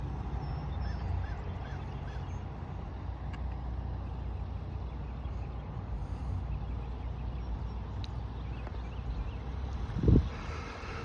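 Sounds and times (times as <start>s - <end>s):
bird honking calls: 0.8s - 2.4s.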